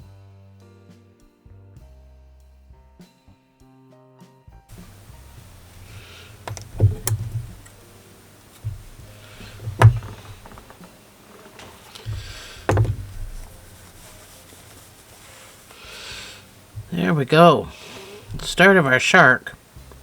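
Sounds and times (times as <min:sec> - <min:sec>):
knocks or thumps: 0:04.7 - 0:07.9, 0:08.6 - 0:14.4, 0:18.0 - 0:18.7
soft rustling of crochet: 0:04.7 - 0:20.0.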